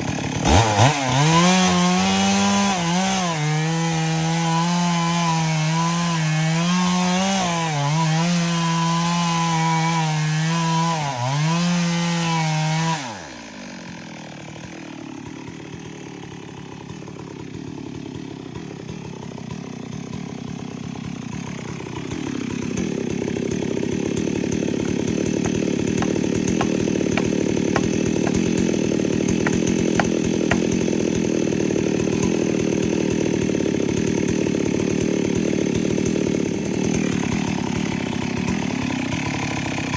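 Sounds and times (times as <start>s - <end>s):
chainsaw cutting at high revs: 0.0s - 39.9s
rough saw sound: 24.2s - 32.2s
wood cracking: 24.3s - 32.2s.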